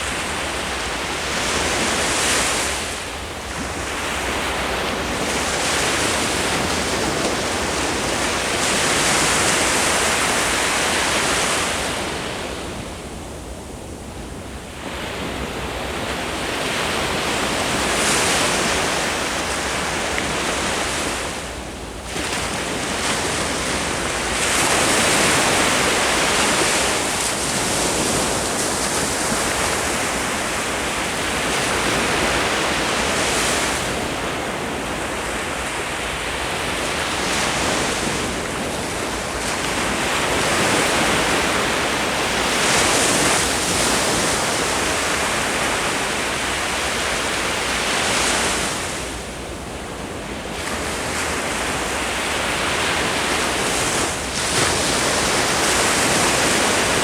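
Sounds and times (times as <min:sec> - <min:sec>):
ocean waves breaking: 0:14.8 - 0:57.0.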